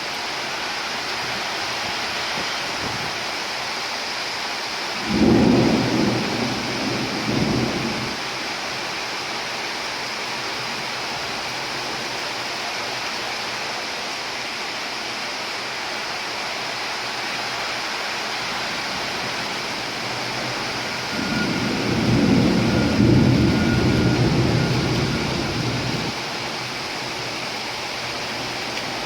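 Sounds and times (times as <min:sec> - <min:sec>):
heavy rain: 0:00.0 - 0:29.0
low thunder rumble: 0:05.0 - 0:08.2, 0:19.9 - 0:26.2.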